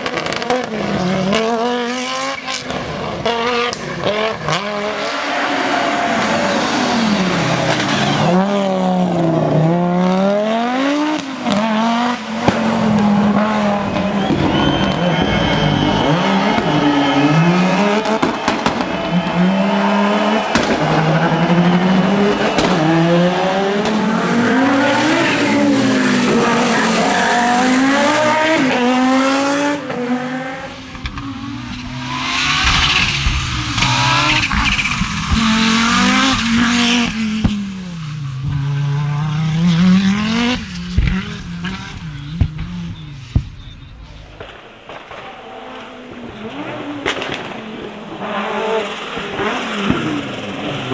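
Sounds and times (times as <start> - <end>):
rally car engine revving: 0.0 - 50.9
tyres hissing: 23.6 - 29.4, 30.5 - 44.4
sharp cracks: 30.5 - 45.3.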